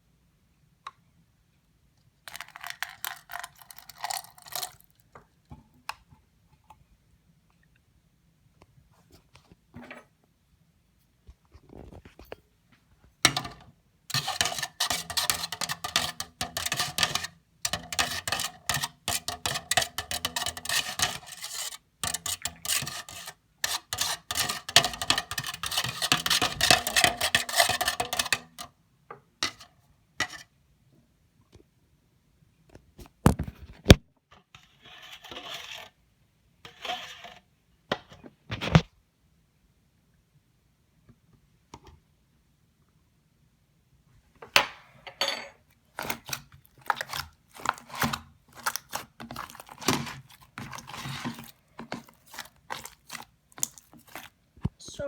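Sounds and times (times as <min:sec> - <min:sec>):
slime squelching and crackling: 0:45.9 - 0:54.9.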